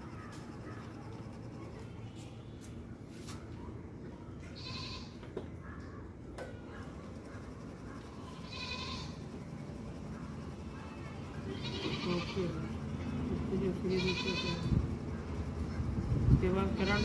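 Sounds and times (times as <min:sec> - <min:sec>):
goat bleating: 0:04.6 - 0:05.2, 0:08.3 - 0:09.2, 0:11.5 - 0:12.7, 0:13.8 - 0:14.7, 0:16.8 - 0:17.0.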